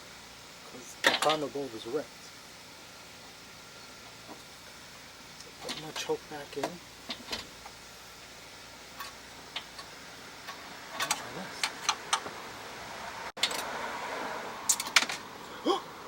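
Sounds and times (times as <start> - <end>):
small metal parts clicking: 14.7 - 15.2.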